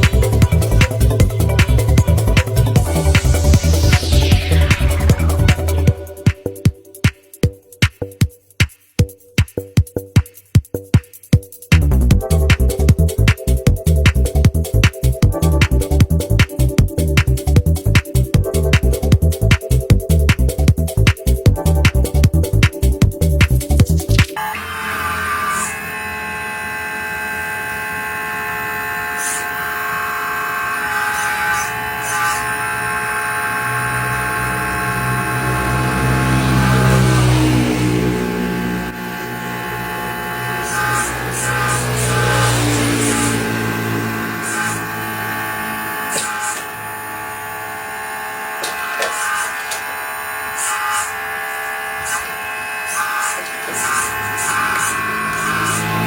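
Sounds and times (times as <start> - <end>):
deep hum: 0.0 - 6.8, 11.7 - 24.4, 32.6 - 46.1
held music tones: 0.0 - 24.8
small motor whining: 24.3 - 56.0.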